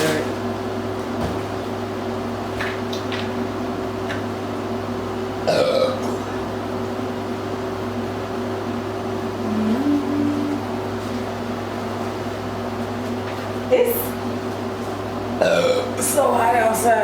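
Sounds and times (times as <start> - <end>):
low background hum: 0.0 - 17.0
loud burp: 5.4 - 6.2, 15.4 - 16.0.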